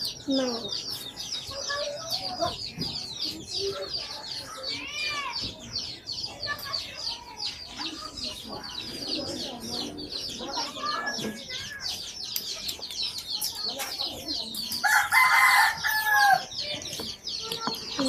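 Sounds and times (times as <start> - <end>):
chicks chirping: 0.0 - 18.0
rooster crowing: 14.8 - 16.4.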